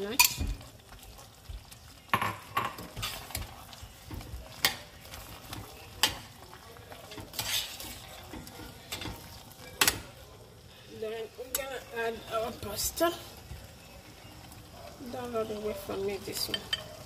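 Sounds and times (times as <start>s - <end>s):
sauce sizzling: 0.0s - 17.0s
spoon scraping a pan: 0.1s - 13.3s.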